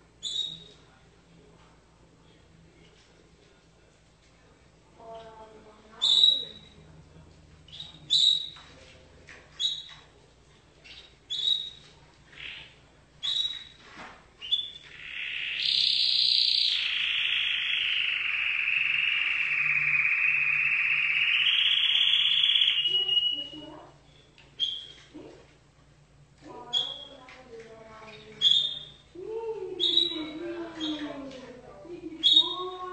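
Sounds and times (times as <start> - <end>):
canary singing: 0.2 - 0.8, 6.0 - 6.8, 7.7 - 8.6, 9.6 - 10.1, 10.8 - 13.8, 14.4 - 25.1, 26.6 - 27.2, 27.9 - 31.3, 32.1 - 32.9.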